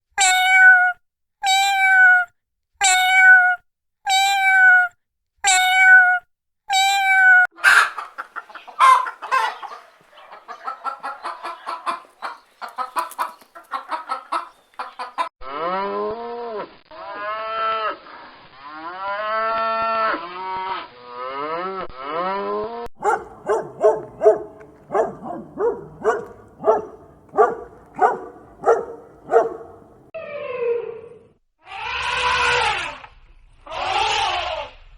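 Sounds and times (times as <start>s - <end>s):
clicking and chattering calls: 7.6s - 15.3s.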